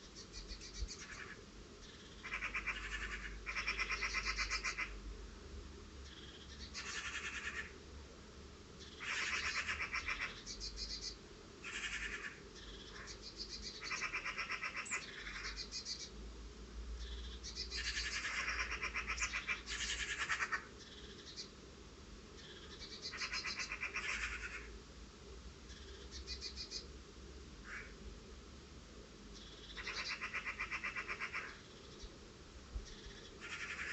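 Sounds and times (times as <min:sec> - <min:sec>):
birds rattling alarm calls: 0:00.3 - 0:05.0, 0:06.1 - 0:07.7, 0:08.9 - 0:16.0, 0:17.5 - 0:21.4, 0:22.6 - 0:24.7, 0:29.6 - 0:31.7, 0:32.9 - 0:33.9.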